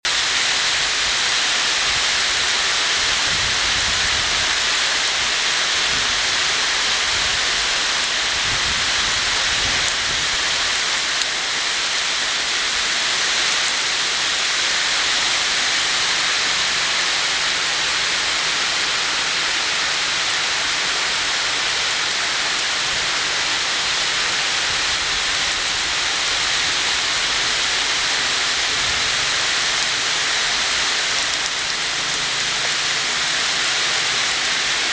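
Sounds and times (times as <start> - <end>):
heavy rain pouring: 0.0 - 34.9.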